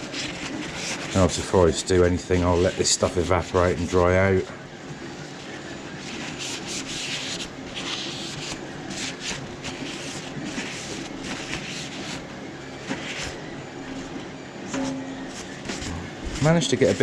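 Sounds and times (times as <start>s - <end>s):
scratchy rubbing bursts: 6.0s - 13.4s.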